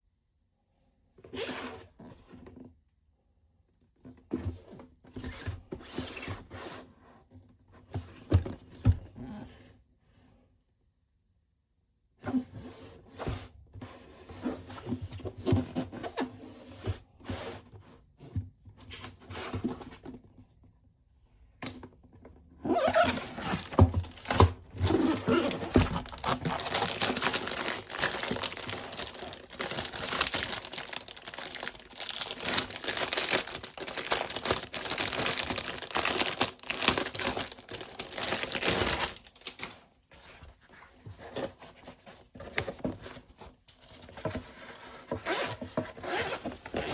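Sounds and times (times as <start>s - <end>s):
packaging crinkling and tearing: 22.8s - 39.8s
packaging clicks and knocks: 22.9s - 39.7s.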